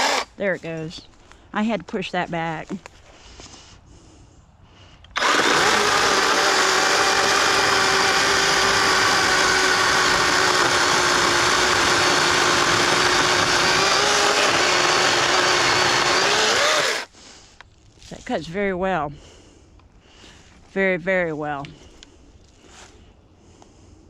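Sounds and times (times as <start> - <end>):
electric chainsaw whining: 0.0 - 0.4, 5.1 - 17.1.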